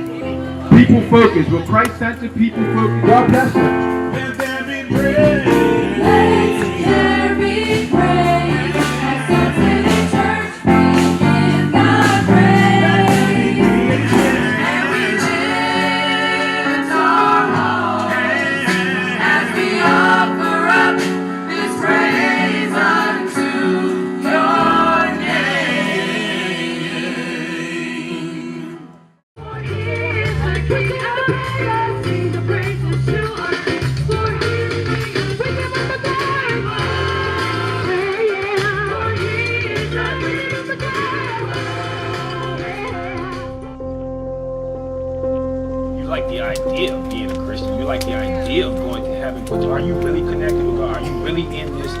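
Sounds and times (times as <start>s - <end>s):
band with bass and drums: 0.0s - 16.0s, 29.4s - 43.8s, 45.9s - 52.0s
gospel choir singing: 2.8s - 33.8s, 36.0s - 43.6s, 46.0s - 52.0s.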